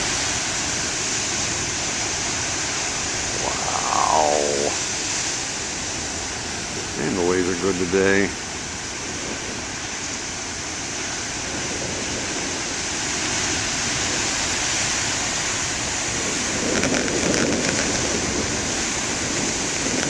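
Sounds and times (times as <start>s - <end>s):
heavy surf breaking: 0.0s - 8.8s
faint crackles: 16.6s - 18.3s, 19.3s - 20.0s.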